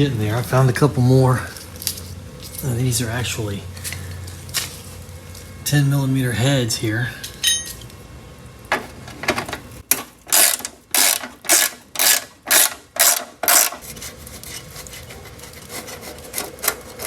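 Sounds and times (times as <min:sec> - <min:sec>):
ratchet wrench clicking: 0:10.3 - 0:13.8.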